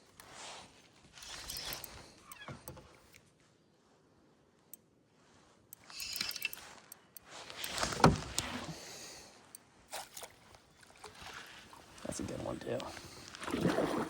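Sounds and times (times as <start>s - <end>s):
sharp clicks: 5.8s - 8.7s.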